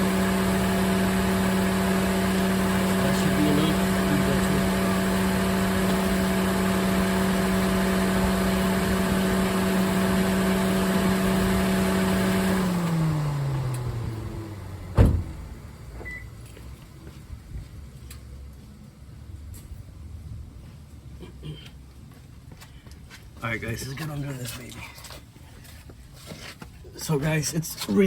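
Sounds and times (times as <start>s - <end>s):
car engine idling: 0.0s - 16.0s
loud thud: 14.9s - 15.5s.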